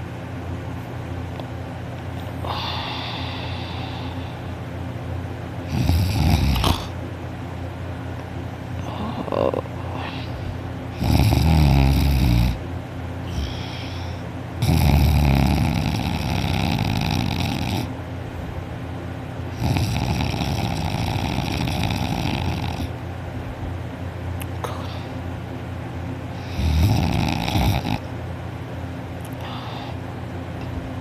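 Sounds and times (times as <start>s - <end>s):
quiet breathing: 2.3s - 4.6s, 8.8s - 10.7s, 13.2s - 14.3s, 29.3s - 30.1s
person snoring loudly: 2.4s - 4.3s, 5.7s - 7.0s, 8.8s - 12.6s, 13.3s - 17.9s, 19.5s - 22.9s, 26.4s - 28.1s.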